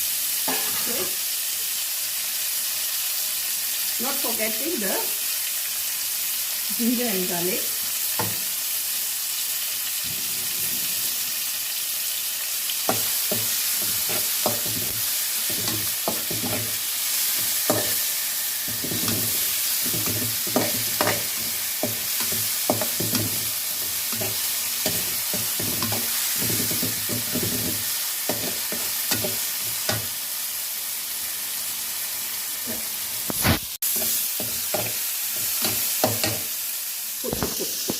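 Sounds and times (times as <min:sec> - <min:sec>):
food sizzling in hot oil: 0:00.0 - 0:37.9
spatula scraping the pan: 0:12.9 - 0:30.1.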